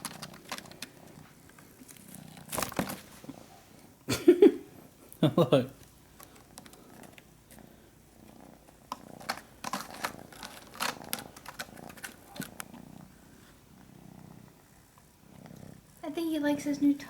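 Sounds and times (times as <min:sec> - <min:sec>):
kitten purring: 0:00.0 - 0:02.6, 0:06.2 - 0:17.0
claws scratching a post: 0:08.9 - 0:12.8.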